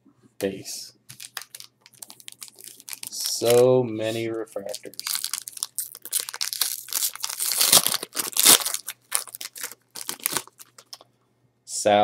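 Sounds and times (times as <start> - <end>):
foil wrapper crinkling and tearing: 1.1 - 3.7, 4.6 - 11.0.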